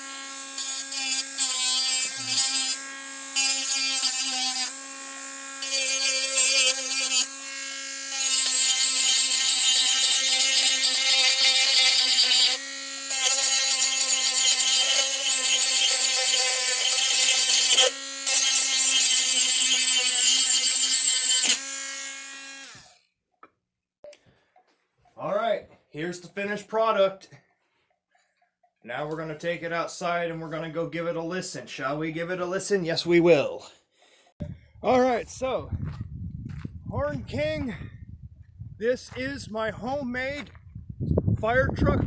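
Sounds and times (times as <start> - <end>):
rotary tool grinding plastic: 0.0 - 23.1
rotary tool winding down: 8.1 - 23.0.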